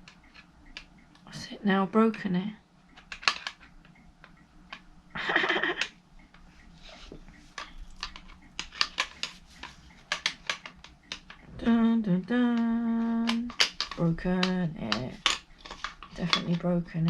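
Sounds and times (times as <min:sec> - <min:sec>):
plastic and metal parts clicking: 0:03.0 - 0:04.8, 0:07.6 - 0:11.5, 0:12.6 - 0:17.0.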